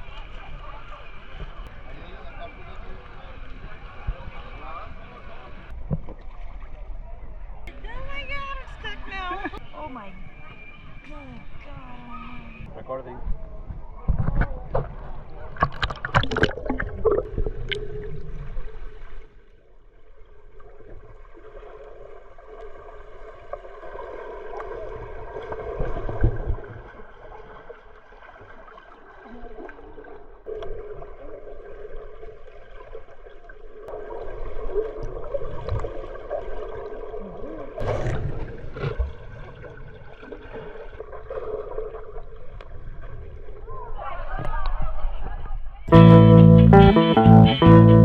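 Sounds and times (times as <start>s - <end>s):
muffled water sloshing and gurgling: 12.2s - 44.3s.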